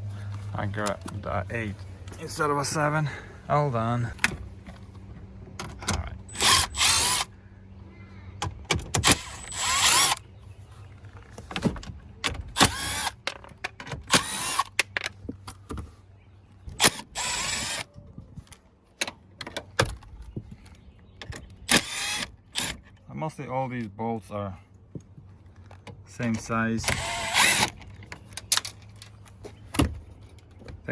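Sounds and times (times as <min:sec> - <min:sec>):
power driver whirring: 0:06.2 - 0:07.3, 0:08.9 - 0:10.2, 0:12.5 - 0:13.2, 0:14.0 - 0:14.8, 0:16.7 - 0:17.9, 0:21.6 - 0:22.8, 0:26.8 - 0:27.8
clicks of tool and bolts: 0:25.6 - 0:30.7.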